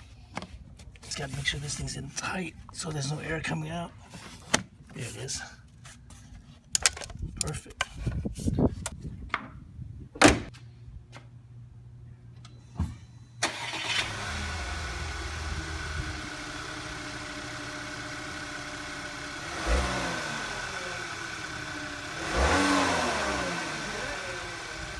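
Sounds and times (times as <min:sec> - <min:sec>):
car engine idling: 0:13.4 - 0:24.9
car engine revving: 0:13.4 - 0:24.9.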